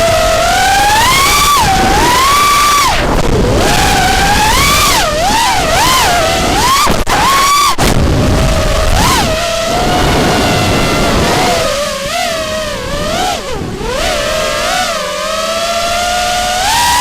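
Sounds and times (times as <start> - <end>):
drone motors whining: 0.0 - 17.0
low rushing noise: 7.9 - 13.8.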